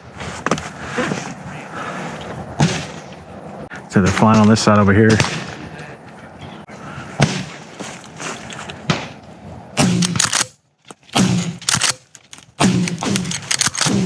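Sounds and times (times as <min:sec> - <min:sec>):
shotgun shots: 0:05.1 - 0:05.6, 0:07.2 - 0:07.6, 0:09.8 - 0:14.0.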